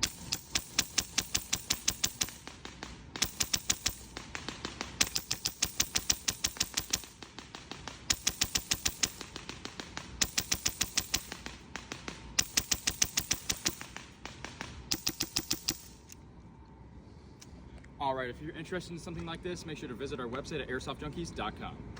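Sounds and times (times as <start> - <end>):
airsoft rifle firing bursts: 0.0 - 16.2.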